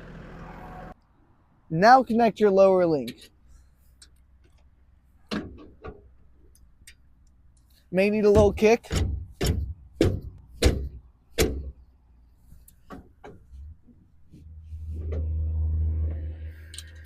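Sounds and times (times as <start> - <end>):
tractor engine hum: 0.0 - 17.0
sharp metal knocks: 8.3 - 11.8.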